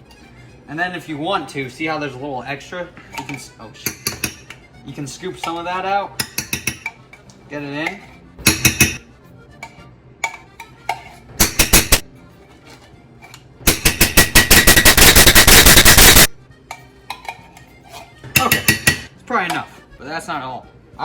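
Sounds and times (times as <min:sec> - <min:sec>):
metal spoon clattering on can: 0:09.6 - 0:12.0, 0:13.7 - 0:17.4.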